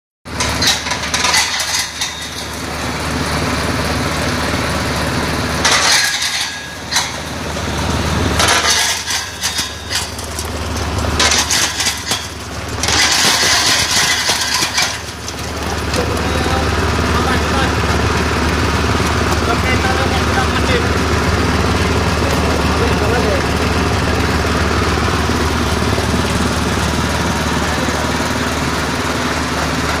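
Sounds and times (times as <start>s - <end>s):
machine motor hum: 6.4s - 30.0s.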